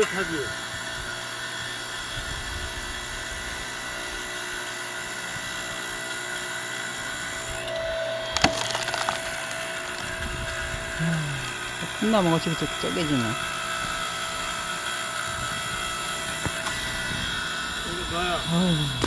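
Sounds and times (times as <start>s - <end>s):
firewood splitting machine running: 0.0s - 19.0s
high steady whine: 6.9s - 19.0s
log cracking apart: 8.3s - 10.8s.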